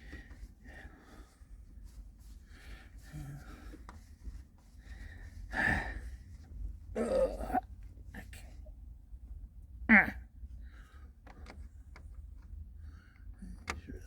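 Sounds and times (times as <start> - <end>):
man clearing his throat: 7.0 - 8.4, 9.9 - 10.2.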